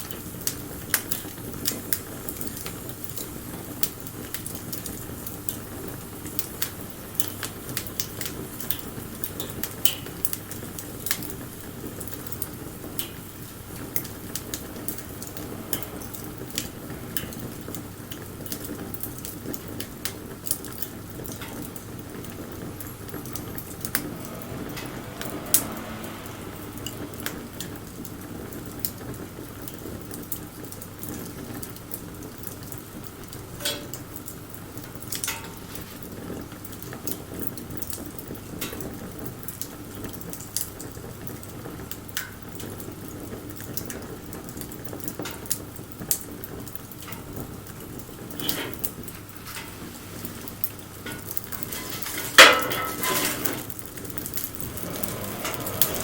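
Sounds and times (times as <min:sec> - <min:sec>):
hiss of flame: 0:00.0 - 0:32.2, 0:48.2 - 0:56.0
campfire crackling and popping: 0:00.0 - 0:56.0.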